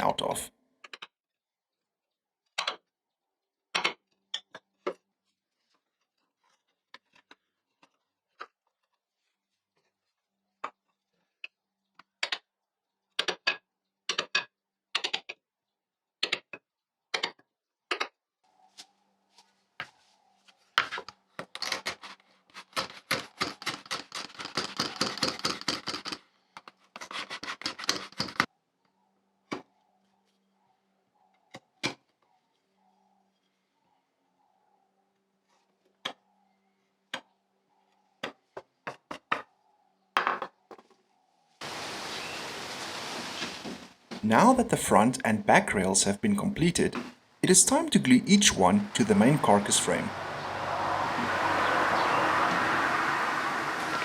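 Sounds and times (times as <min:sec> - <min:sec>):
rasping strokes on hardwood: 0:26.9 - 0:28.5.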